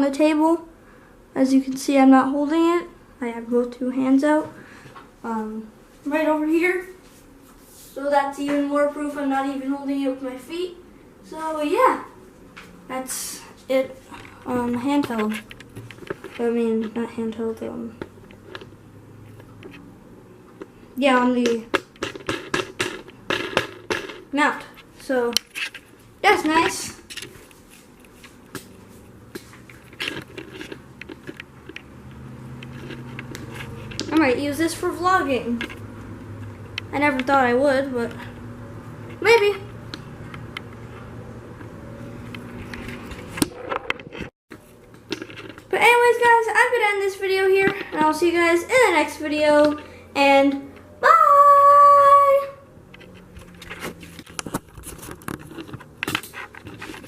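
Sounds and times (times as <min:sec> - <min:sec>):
handling clicks and scrapes: 0:14.1 - 0:17.0, 0:21.4 - 0:34.4, 0:35.4 - 0:37.4, 0:40.2 - 0:45.8, 0:52.9 - 0:57.0.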